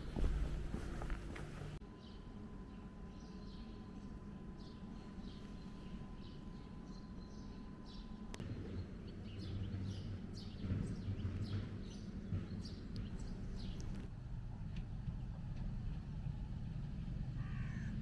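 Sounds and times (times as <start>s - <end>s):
small birds chirping: 0.0s - 14.1s.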